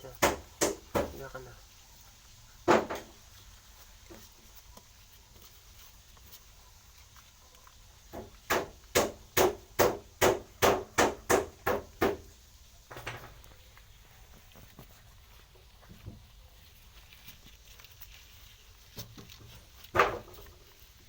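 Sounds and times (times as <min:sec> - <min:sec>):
sharp knocks: 0:00.1 - 0:01.2, 0:02.7 - 0:03.1, 0:08.1 - 0:12.3.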